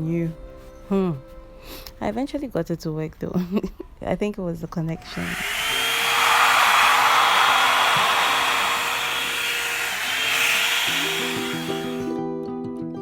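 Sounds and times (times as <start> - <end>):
blow dryer running: 5.0 - 12.2.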